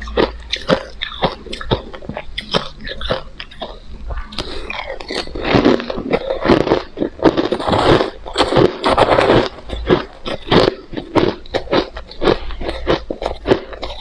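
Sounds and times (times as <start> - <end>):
chewing crushed ice: 0.0 - 14.0.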